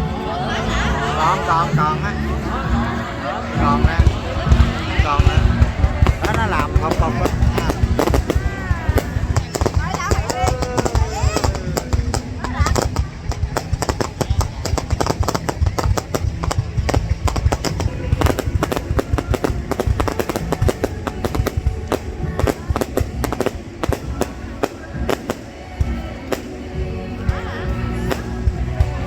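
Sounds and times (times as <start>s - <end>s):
low rumble: 0.0s - 29.0s
music playing: 0.0s - 29.0s
fireworks bangs and crackles: 0.8s - 29.0s.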